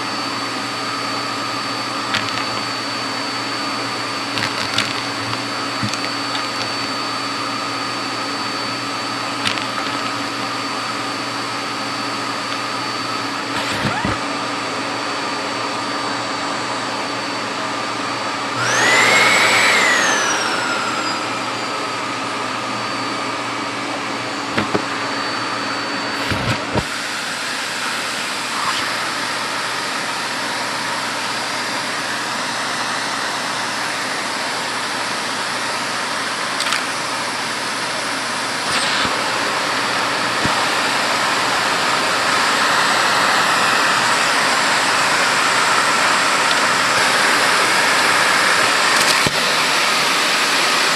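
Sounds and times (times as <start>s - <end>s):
vacuum cleaner running: 0.0s - 50.9s
objects clicking through hose: 36.6s - 36.9s.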